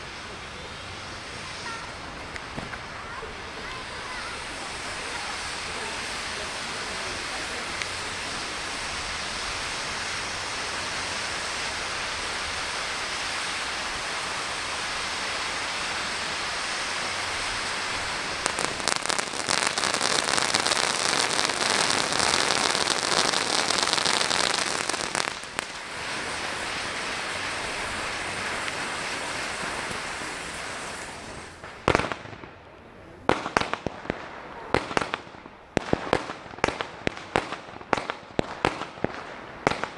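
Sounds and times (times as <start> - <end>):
fireworks hissing: 0.0 - 32.6
fireworks bangs: 0.0 - 39.9
fireworks crackling: 0.0 - 39.9.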